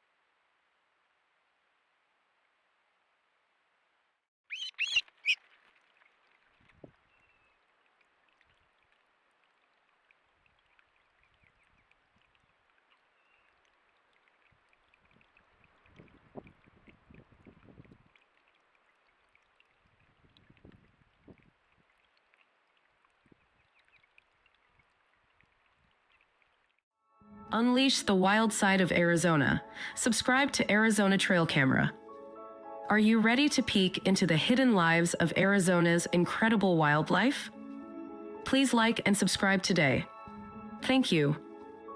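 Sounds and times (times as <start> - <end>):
bird squawking: 4.5 - 5.4.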